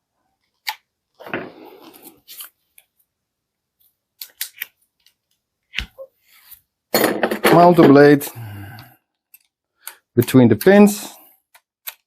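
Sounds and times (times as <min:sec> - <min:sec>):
tool clicks: 0:11.5 - 0:12.0.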